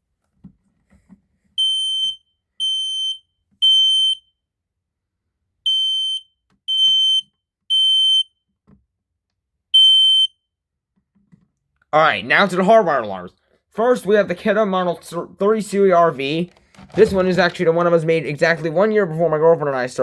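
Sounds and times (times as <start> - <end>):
smoke alarm beeping: 1.6 - 4.4, 5.7 - 8.4, 9.8 - 10.4.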